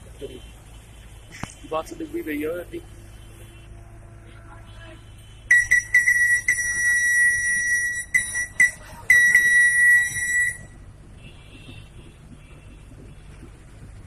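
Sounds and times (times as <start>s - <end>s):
shrill whistle toots and blasts: 5.5s - 10.8s.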